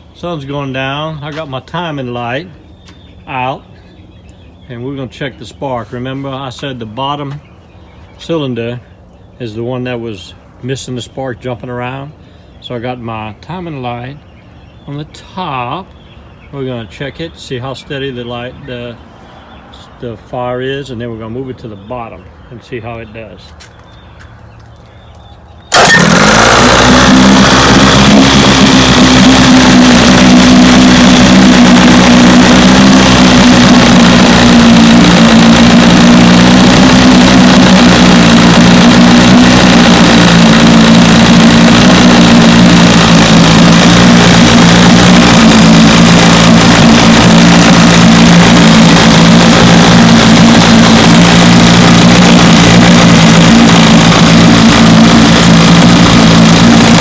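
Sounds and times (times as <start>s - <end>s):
outboard motor running: 25.7s - 57.0s.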